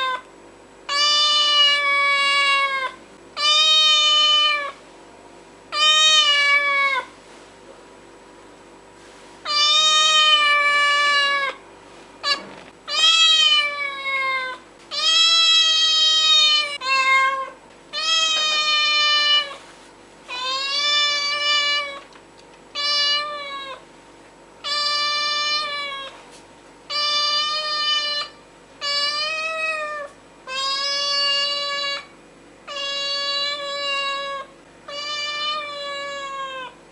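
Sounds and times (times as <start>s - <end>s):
cat meowing: 0.9s - 4.8s, 5.7s - 7.1s, 9.5s - 11.6s, 12.2s - 19.6s, 20.3s - 22.1s, 22.8s - 23.8s, 24.6s - 26.2s, 26.9s - 32.1s, 32.7s - 36.8s.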